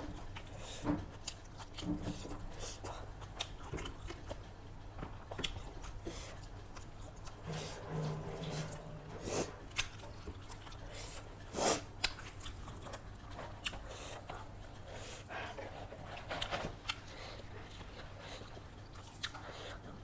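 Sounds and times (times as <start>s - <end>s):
low hum: 7.3s - 9.5s
chewing crunches: 16.1s - 19.8s.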